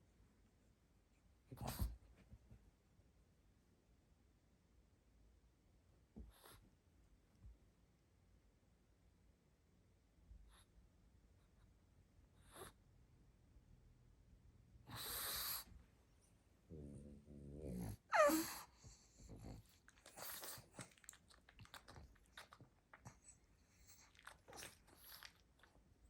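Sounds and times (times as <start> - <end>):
dog snoring: 14.9 - 15.7, 16.7 - 20.9.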